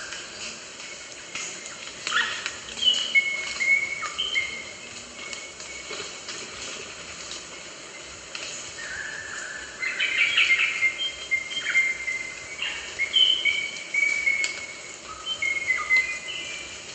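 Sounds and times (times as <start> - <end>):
background hiss: 0.0 - 16.9
bird piping whistles: 2.1 - 4.7, 8.8 - 16.7.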